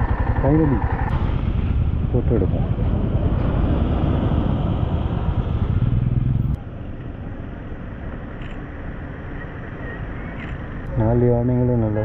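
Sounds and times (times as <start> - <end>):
motorcycle engine idling: 0.0 - 6.6.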